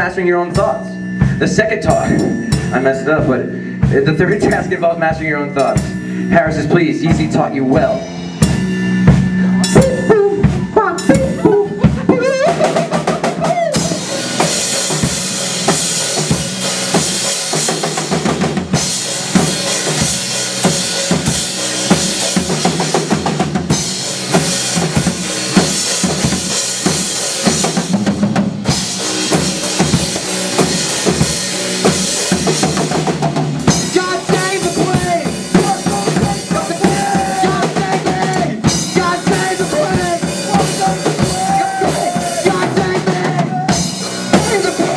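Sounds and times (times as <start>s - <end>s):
band playing instrumental: 0.0s - 44.9s
cymbals: 0.0s - 44.9s.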